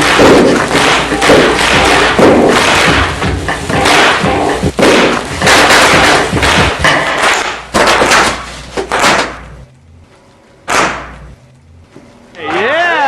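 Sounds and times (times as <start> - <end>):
bubble wrap popping: 0.0 - 9.6.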